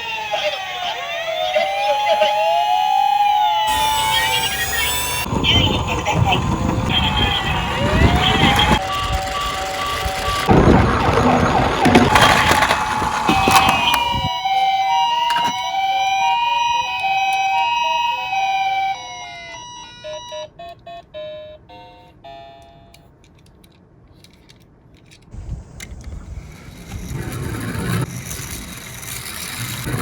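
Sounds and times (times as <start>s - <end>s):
rising and falling siren wail: 0.0s - 20.2s
hi-lo two-tone siren: 0.0s - 22.1s.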